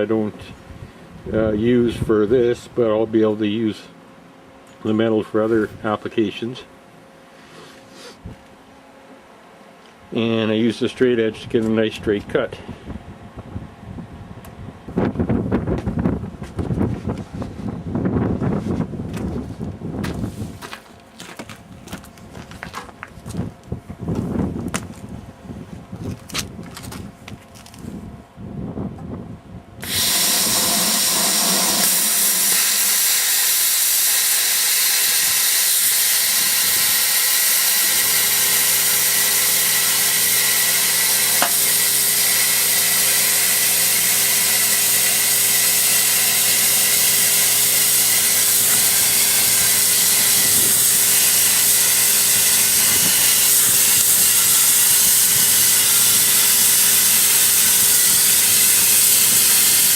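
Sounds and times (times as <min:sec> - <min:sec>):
steady low hum: 0:00.0 - 0:59.9
plasma cutter hissing: 0:29.8 - 0:59.9.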